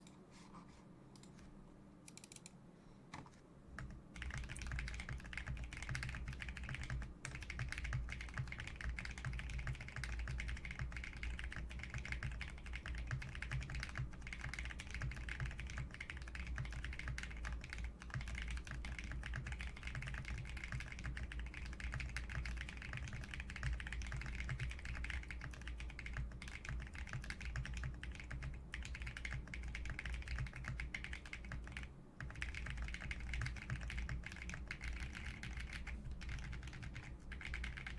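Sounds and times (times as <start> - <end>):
typing on mechanical keyboard: 2.1 - 2.5, 3.8 - 37.9.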